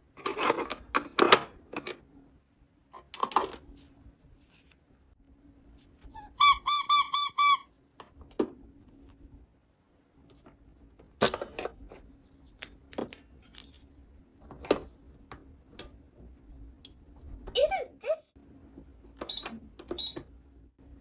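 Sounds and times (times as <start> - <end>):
squeaky toy squeaking: 6.2 - 7.6.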